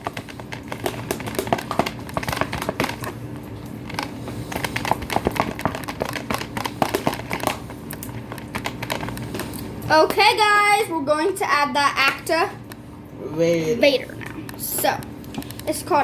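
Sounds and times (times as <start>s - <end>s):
glue stirred in bowl: 0.0s - 10.3s.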